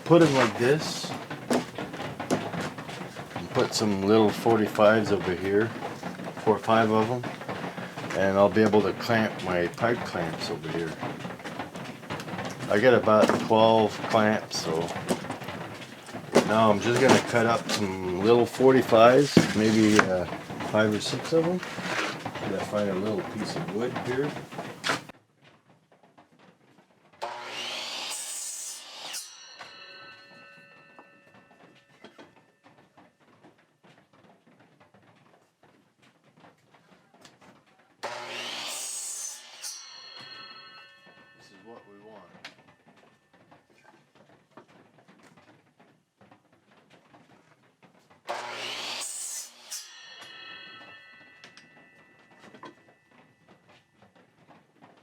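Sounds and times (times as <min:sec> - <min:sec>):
saw blade humming coasting down: 0:27.2 - 0:29.6, 0:38.0 - 0:39.8, 0:48.3 - 0:51.4
electric saw cutting wood: 0:27.2 - 0:30.0, 0:38.0 - 0:40.3, 0:48.3 - 0:51.0.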